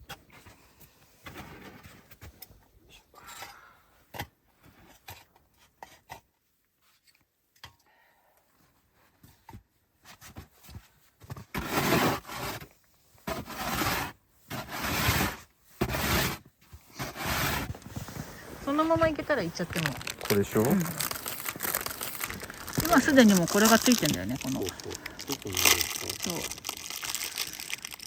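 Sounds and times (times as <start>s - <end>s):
loud rasping scrapes: 13.3s - 17.8s.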